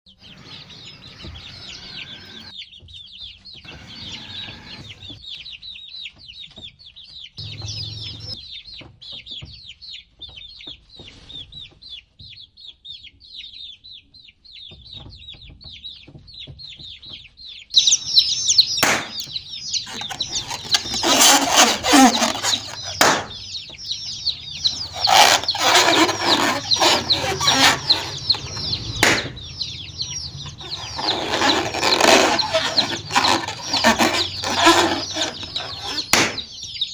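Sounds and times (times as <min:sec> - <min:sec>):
baby chicks peeping: 0:00.1 - 0:36.9
rustling: 0:18.1 - 0:36.6
sharp knocks: 0:18.8 - 0:19.4, 0:20.1 - 0:23.8, 0:24.6 - 0:31.0, 0:32.3 - 0:36.5.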